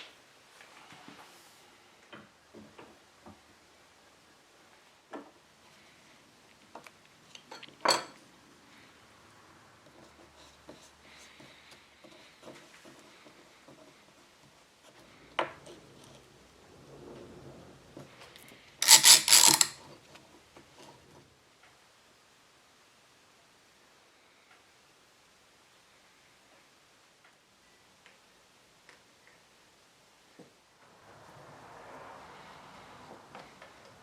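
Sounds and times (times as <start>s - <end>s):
loud rasping rattle: 18.8s - 19.8s.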